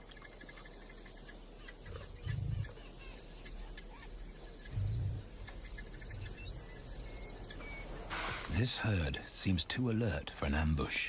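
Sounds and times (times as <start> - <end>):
small birds chirping: 0.0 - 11.0
low rumbling sounds: 1.9 - 3.0, 4.2 - 9.3.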